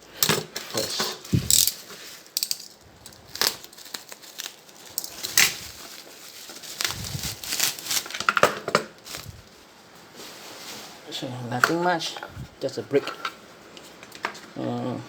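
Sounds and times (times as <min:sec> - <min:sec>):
wrapping crinkling and tearing: 0:00.8 - 0:11.1.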